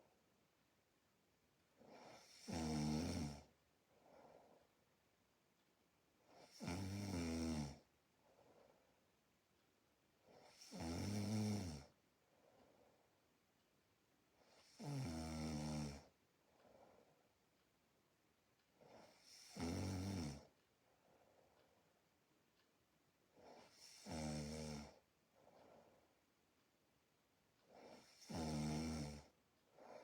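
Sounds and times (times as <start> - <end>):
person snoring: 1.8 - 3.5, 6.4 - 7.8, 10.3 - 11.9, 14.5 - 16.1, 18.9 - 20.5, 23.5 - 25.0, 27.7 - 29.3.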